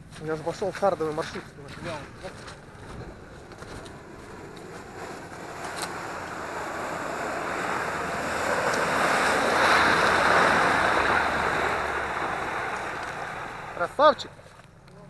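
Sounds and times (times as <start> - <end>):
vehicle splashing through water and mud: 4.1 - 14.4.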